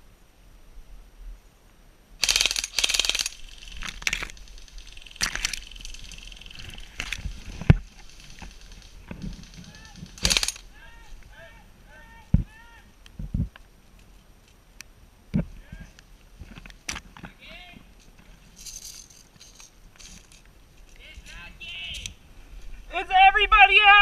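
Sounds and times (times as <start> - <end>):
airsoft guns firing bursts: 2.2 - 10.7.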